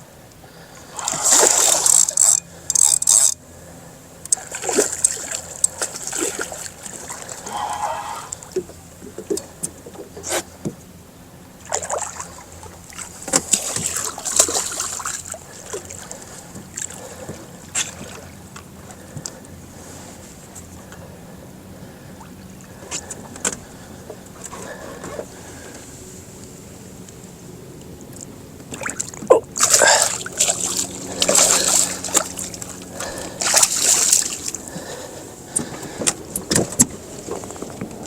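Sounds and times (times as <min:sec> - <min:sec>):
water splashing and sloshing: 0:00.3 - 0:38.0.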